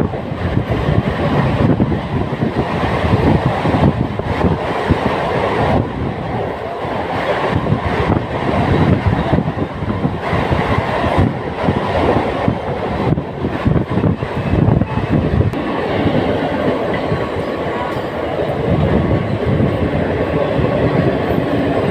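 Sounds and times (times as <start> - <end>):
train rumbling at speed: 0.0 - 21.9
wheels rattling on track: 0.0 - 21.9.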